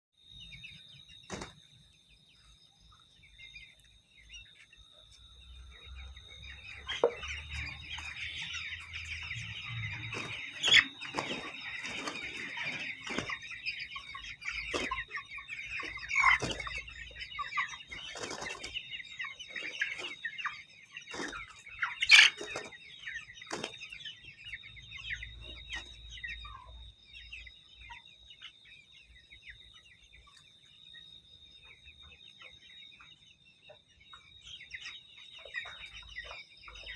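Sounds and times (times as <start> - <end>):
high-pitched whine: 0.2 - 27.5
birds calling and chattering: 0.4 - 36.9
wing flaps: 10.0 - 13.6, 14.7 - 15.1, 15.8 - 17.0, 17.9 - 18.8, 21.1 - 22.8, 23.5 - 23.8.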